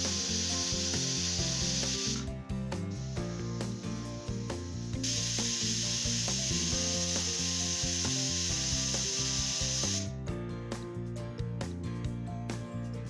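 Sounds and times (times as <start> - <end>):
food sizzling in hot oil: 0.0 - 2.3, 2.9 - 10.1
background music: 0.0 - 13.0.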